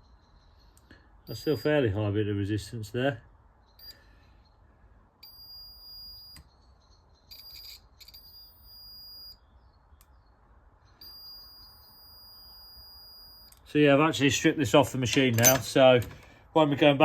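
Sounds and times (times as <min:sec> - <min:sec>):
multimeter continuity beeps: 0:01.3 - 0:02.0, 0:03.8 - 0:04.0, 0:05.2 - 0:06.6, 0:07.3 - 0:09.4, 0:11.0 - 0:13.6.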